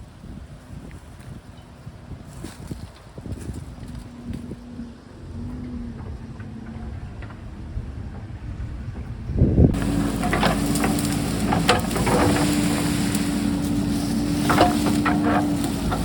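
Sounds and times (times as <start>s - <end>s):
diesel engine under load: 4.9s - 16.0s
knocks and scrapes on rocky ground: 9.8s - 16.0s.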